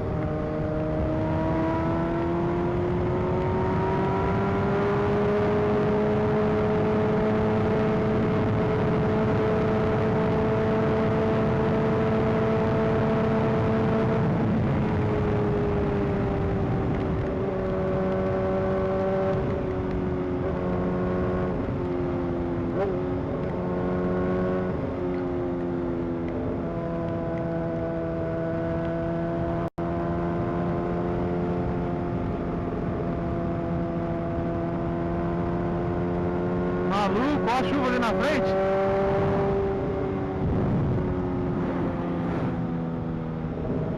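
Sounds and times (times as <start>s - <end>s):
motorcycle engine cruising: 0.0s - 43.9s
wind noise: 11.3s - 20.6s, 38.5s - 43.9s.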